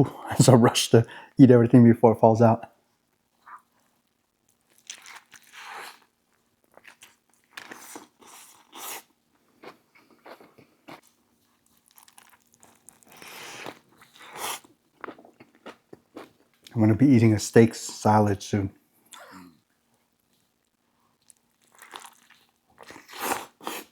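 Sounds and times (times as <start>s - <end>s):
person chewing a sandwich: 3.3s - 16.8s, 20.2s - 23.9s.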